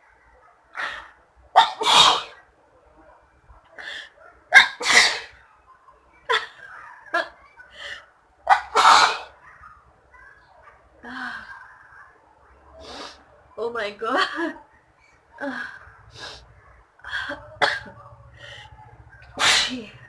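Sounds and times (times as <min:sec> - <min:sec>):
woman sneezing: 0:01.6 - 0:02.4, 0:04.6 - 0:05.3, 0:08.6 - 0:09.3, 0:19.4 - 0:19.9
sniffs and breaths: 0:12.8 - 0:13.4, 0:15.5 - 0:17.5, 0:18.3 - 0:19.8.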